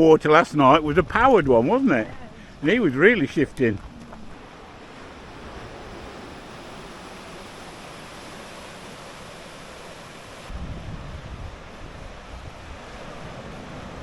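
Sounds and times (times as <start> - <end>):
surf washing on shore: 0.0 - 14.0
wind buffeting microphone: 0.7 - 2.7, 10.5 - 14.0.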